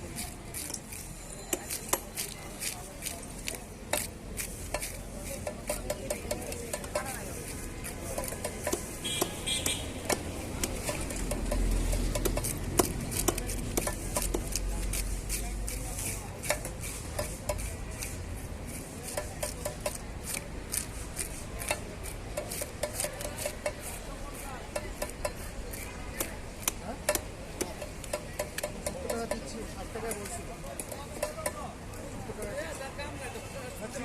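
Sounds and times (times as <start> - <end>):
metal blade scraping fish: 10.7 - 27.3.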